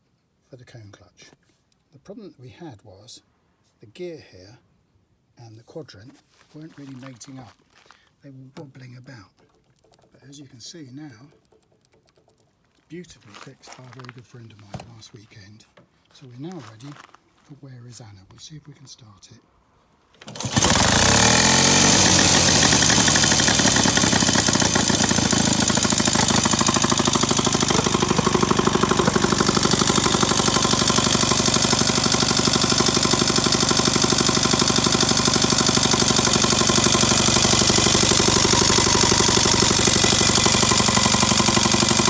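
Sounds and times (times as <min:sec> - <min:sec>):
motorcycle engine running: 0:20.3 - 0:42.0.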